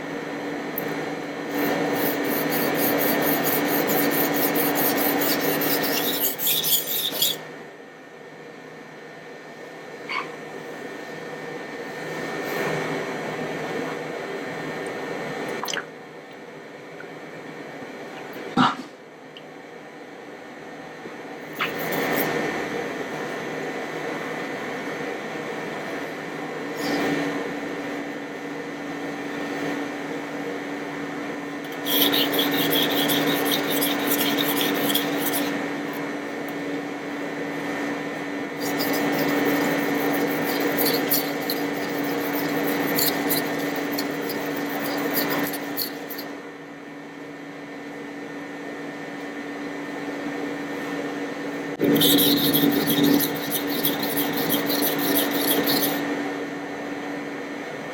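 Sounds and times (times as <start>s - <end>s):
steady hum: 0.0s - 57.9s
knife rasping on whetstone: 1.5s - 7.4s, 21.6s - 22.4s, 31.7s - 36.0s, 38.6s - 46.3s, 51.8s - 56.0s.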